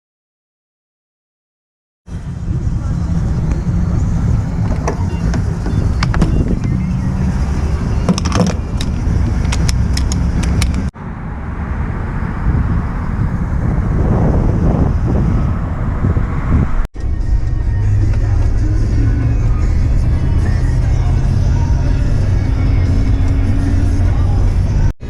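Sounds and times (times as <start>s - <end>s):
steady low rumble: 2.1s - 24.9s
sharp clicks and knocks: 4.6s - 6.8s, 8.0s - 10.9s.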